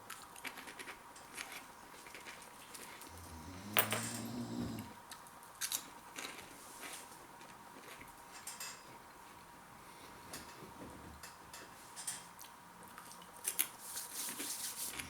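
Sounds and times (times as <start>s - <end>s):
crunchy snack being chewed: 0.0s - 3.3s, 5.1s - 8.1s.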